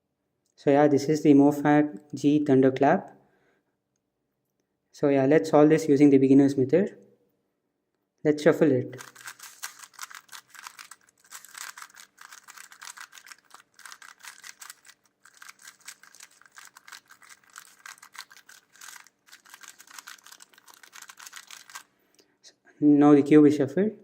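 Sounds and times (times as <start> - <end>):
puzzle cube clattering: 9.0 - 21.9.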